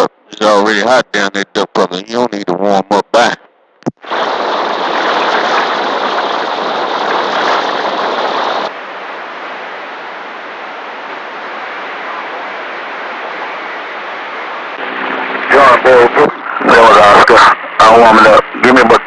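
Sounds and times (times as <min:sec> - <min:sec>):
radio static hiss: 0:00.0 - 0:19.0.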